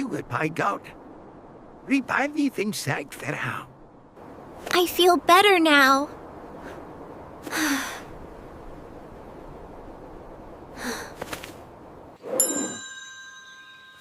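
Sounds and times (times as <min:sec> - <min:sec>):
soft breathy sighs: 0:10.7 - 0:11.2
bell ringing: 0:12.4 - 0:14.0.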